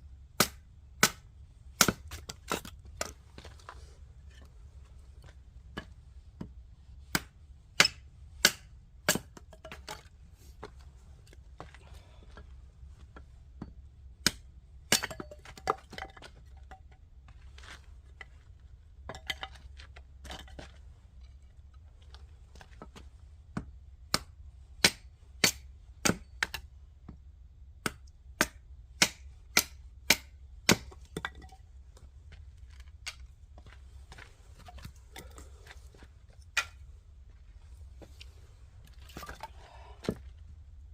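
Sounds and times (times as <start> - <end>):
low steady hum: 0.0 - 40.9
firewood pieces knocking: 7.2 - 10.1, 13.7 - 17.0, 19.0 - 20.8, 29.0 - 31.7.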